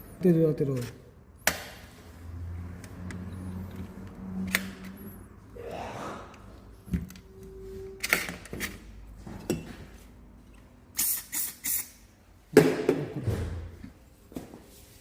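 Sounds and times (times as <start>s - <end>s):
injector spraying hissing bursts: 11.0s - 12.0s.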